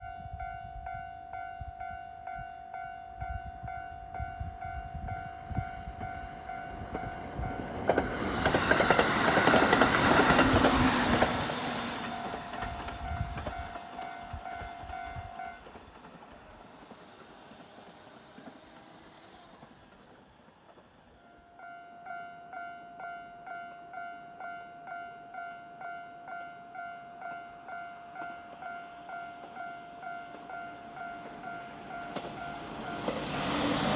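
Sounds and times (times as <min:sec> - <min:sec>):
train wheels clacking over rail joints: 0:06.9 - 0:21.1, 0:31.2 - 0:33.9.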